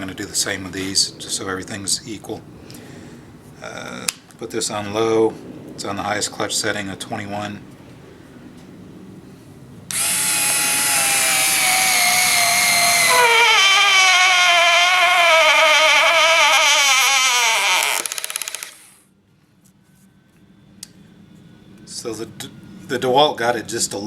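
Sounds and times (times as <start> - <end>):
cordless screwdriver whining: 9.9 - 19.0
screwdriver rapid clicking: 18.0 - 18.9.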